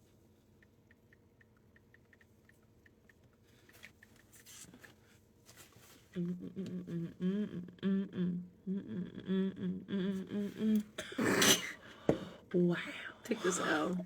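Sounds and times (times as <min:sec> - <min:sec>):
faint regular ticks: 0:00.4 - 0:05.0
person humming: 0:06.2 - 0:11.4.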